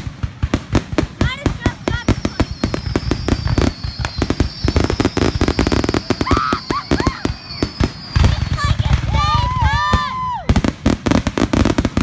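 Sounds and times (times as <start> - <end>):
fireworks cracking and banging: 0.0 - 12.0
high whistle falling in pitch: 2.6 - 8.4.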